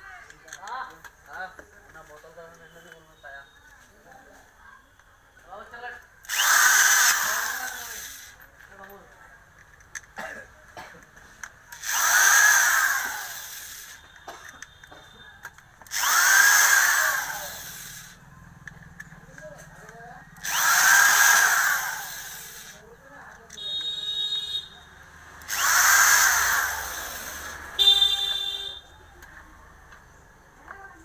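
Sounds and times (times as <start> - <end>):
electric wood planer: 6.3 - 8.2, 15.9 - 18.2, 20.4 - 22.8, 25.4 - 27.9.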